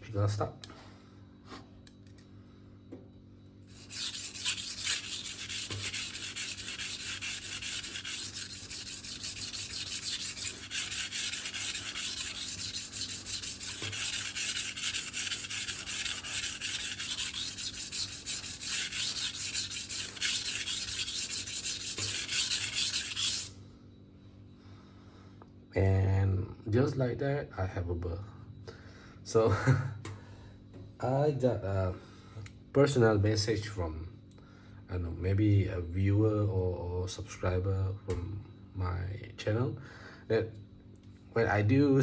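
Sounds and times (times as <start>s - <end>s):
knife scraping on whetstone: 3.7s - 23.6s.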